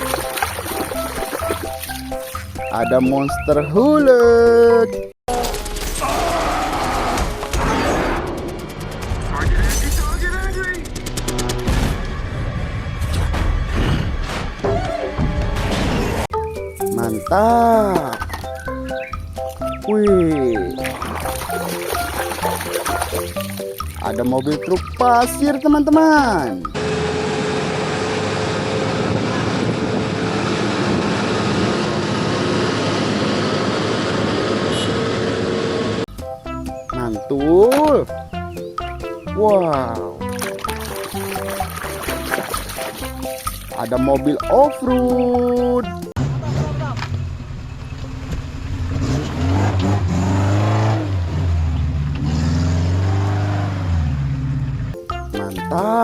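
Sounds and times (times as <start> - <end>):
spraying water: 0.0 - 2.6, 20.8 - 24.2, 40.2 - 43.8
car engine revving: 46.2 - 54.9.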